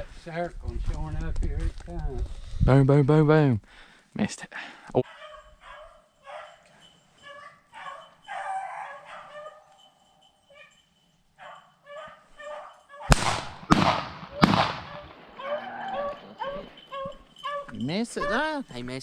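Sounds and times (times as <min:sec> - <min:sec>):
beagles baying: 0:05.1 - 0:18.7
gunshots: 0:13.1 - 0:15.4.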